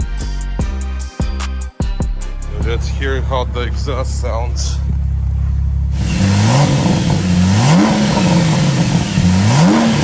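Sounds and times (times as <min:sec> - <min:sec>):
car engine revving: 0:03.0 - 0:10.0.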